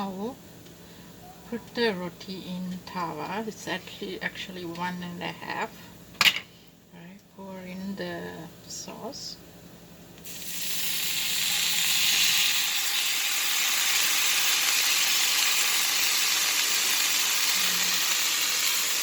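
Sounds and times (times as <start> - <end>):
sauce sizzling on a hot pan: 10.2 - 19.0.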